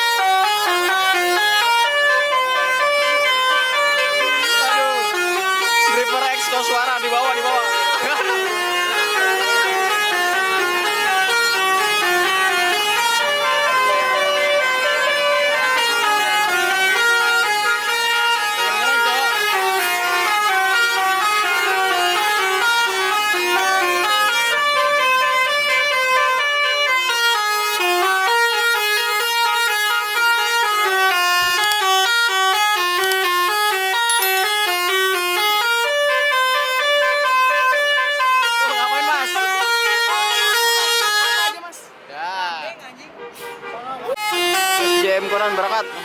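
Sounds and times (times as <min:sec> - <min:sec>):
multi-tone musical air horn: 0:00.0 - 0:41.9, 0:43.2 - 0:46.0.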